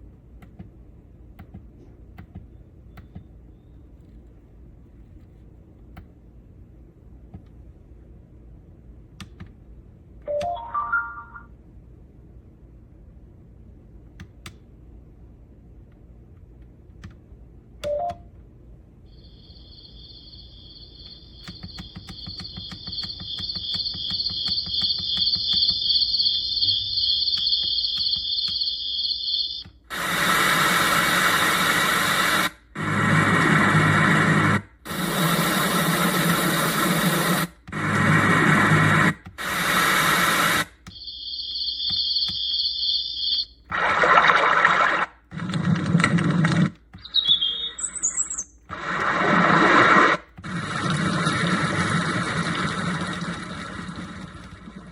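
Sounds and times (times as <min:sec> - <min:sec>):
cricket chorus: 0:19.1 - 0:29.6, 0:41.0 - 0:43.5
white noise hiss: 0:29.8 - 0:40.9.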